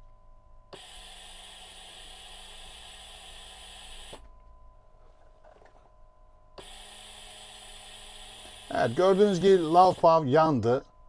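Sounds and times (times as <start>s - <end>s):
ventilator gas hissing: 0.8s - 4.2s, 6.6s - 10.3s.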